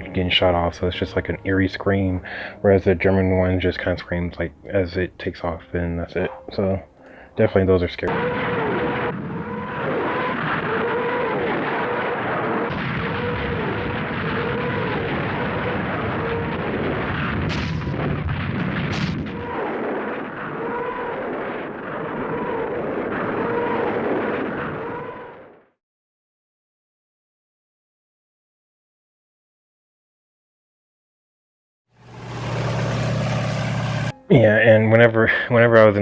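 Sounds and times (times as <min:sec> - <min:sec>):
tank engine and track rumble: 0:32.0 - 0:34.2.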